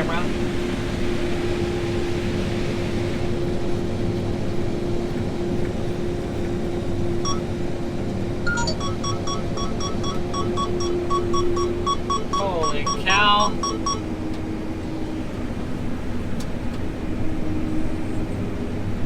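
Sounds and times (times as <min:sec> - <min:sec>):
combine cab engine hum: 0:00.0 - 0:19.0
short electronic beeps: 0:08.5 - 0:14.1.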